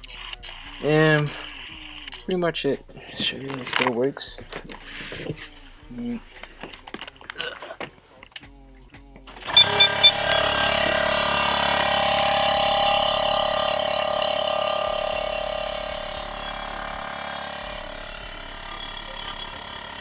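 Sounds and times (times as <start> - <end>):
air compressor running: 4.3 - 7.0, 9.4 - 20.0.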